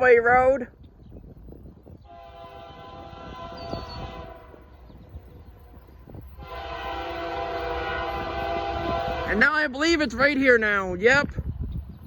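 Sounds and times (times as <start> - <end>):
faint locomotive air horn: 2.1 - 4.7, 6.4 - 9.5.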